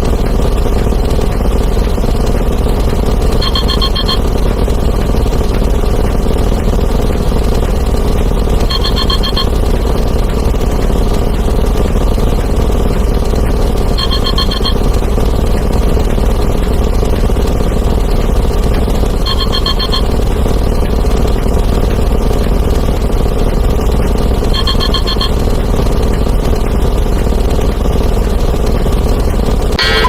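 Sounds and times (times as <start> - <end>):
alarm clock ringing: 3.4 - 4.2, 8.7 - 9.6, 14.0 - 14.9, 19.2 - 20.1, 24.5 - 25.4.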